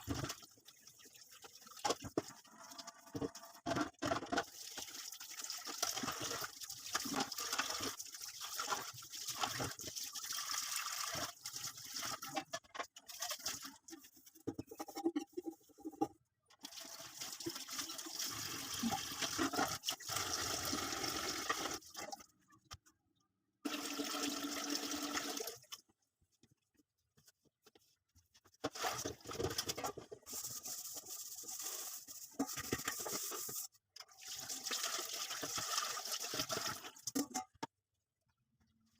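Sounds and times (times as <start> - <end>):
water running from a tap: 4.5 - 12.4, 16.7 - 21.9, 23.7 - 25.6, 30.4 - 37.2.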